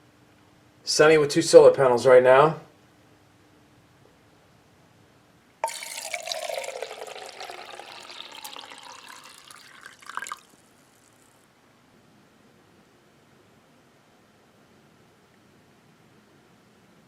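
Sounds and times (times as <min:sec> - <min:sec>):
water pouring: 0:05.6 - 0:11.3.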